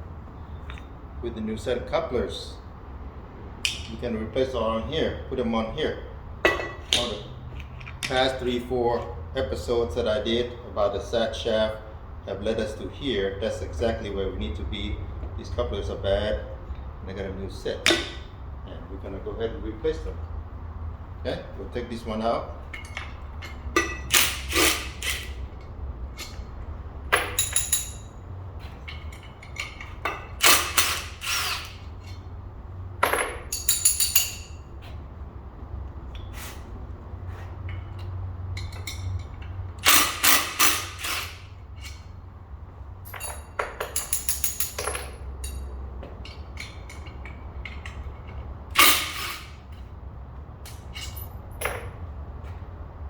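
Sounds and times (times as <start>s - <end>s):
metal tools clinking: 6.4s - 9.1s, 17.8s - 18.4s, 21.6s - 32.3s, 33.0s - 34.9s, 37.6s - 42.2s, 43.0s - 49.8s, 50.6s - 52.1s.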